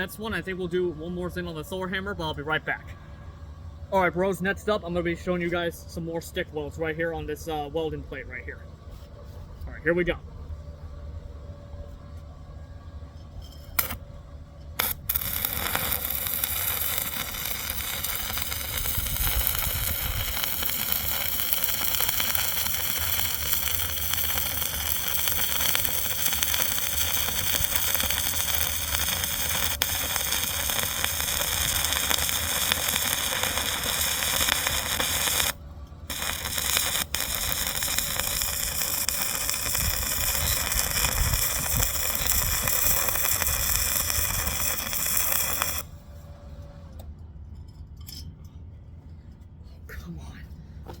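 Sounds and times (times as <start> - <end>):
welding arc crackling and hissing: 13.8 - 14.0, 14.8 - 46.0
electrode strikes: 14.8 - 45.9.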